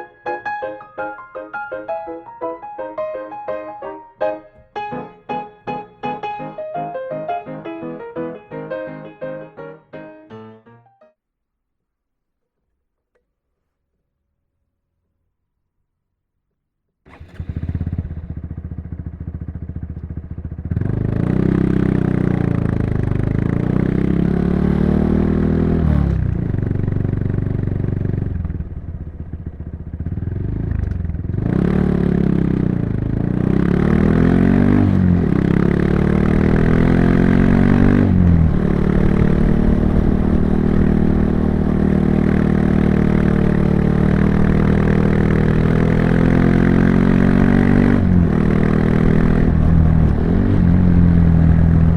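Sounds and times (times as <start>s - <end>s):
motorcycle engine shifting gears: 17.1s - 51.9s.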